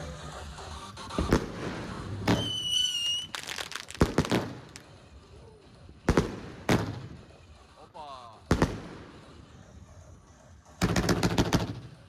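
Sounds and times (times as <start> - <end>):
fireworks shots and bursts: 0.0 - 12.0
firework whistle: 1.0 - 4.8.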